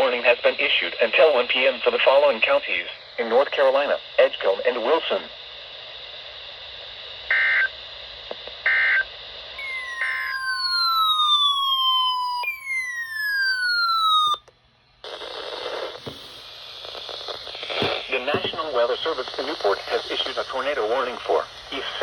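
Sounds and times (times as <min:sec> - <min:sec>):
radio hiss: 0:00.0 - 0:10.5, 0:15.0 - 0:22.0
digital data tone bursts: 0:09.6 - 0:11.4
falling whistling tones: 0:09.6 - 0:14.4.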